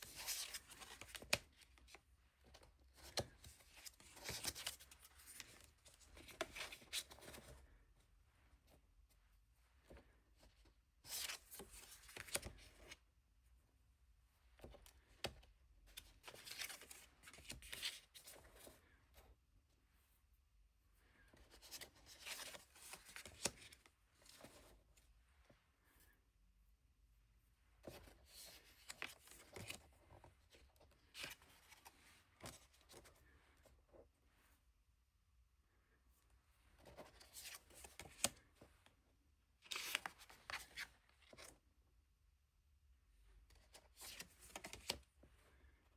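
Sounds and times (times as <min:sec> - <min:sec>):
cards rustling and sliding: 0:00.0 - 0:07.7, 0:11.1 - 0:13.0, 0:15.0 - 0:18.8, 0:21.5 - 0:24.7, 0:27.8 - 0:33.3, 0:36.8 - 0:38.5, 0:39.6 - 0:41.5, 0:43.7 - 0:45.1.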